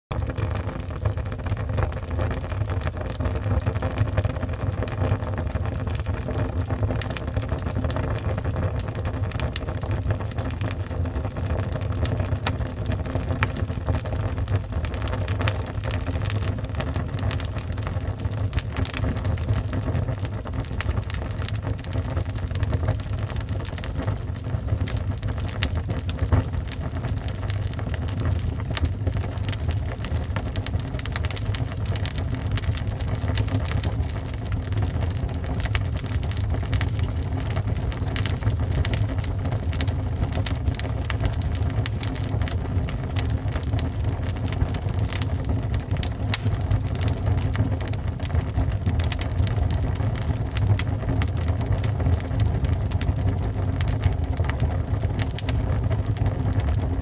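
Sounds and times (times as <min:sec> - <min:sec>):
crackles and pops of burning logs: 0:00.1 - 0:57.0
low rumble of flames: 0:00.1 - 0:57.0.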